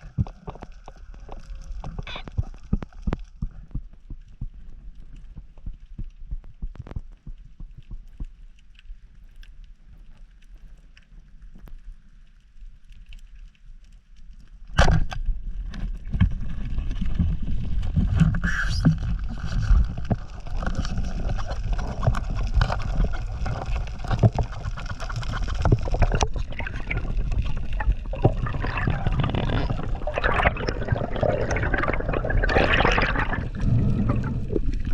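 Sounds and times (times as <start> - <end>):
underwater clicks: 0.0 - 9.0, 18.1 - 34.9
water sloshing and gurgling: 0.0 - 9.4, 14.8 - 34.9
water splash: 24.0 - 34.9.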